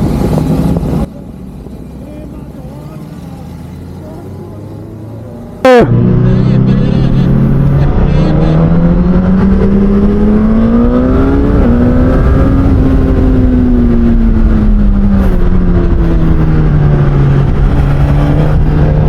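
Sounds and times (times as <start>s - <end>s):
motorcycle engine revving: 5.4s - 19.0s.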